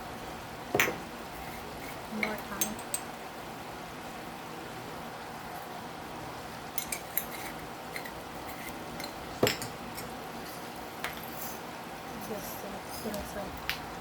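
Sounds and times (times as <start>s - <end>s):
steady low hiss: 0.0s - 14.0s.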